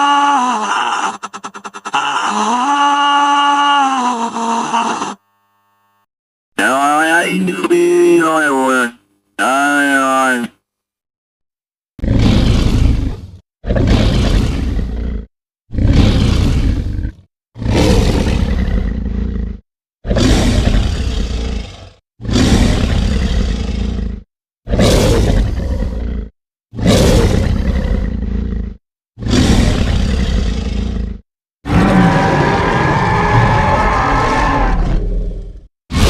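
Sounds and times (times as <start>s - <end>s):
deep monster roars: 12.0s - 36.0s.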